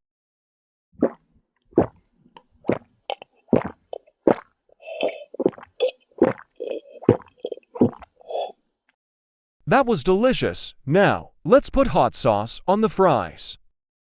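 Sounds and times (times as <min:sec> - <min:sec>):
wet chewing and mouth smacks: 0:01.8 - 0:08.5.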